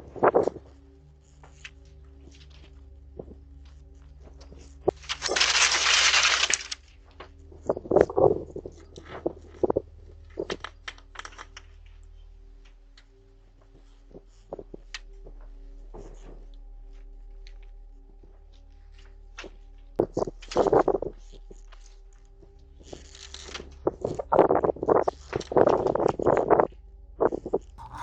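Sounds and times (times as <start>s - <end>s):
faint steady hum: 26.4s - 28.0s.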